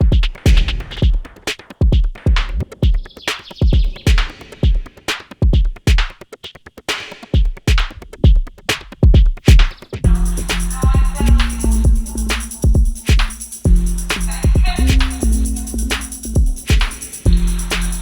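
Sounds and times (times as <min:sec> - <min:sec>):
drum machine beat: 0:00.0 - 0:18.0.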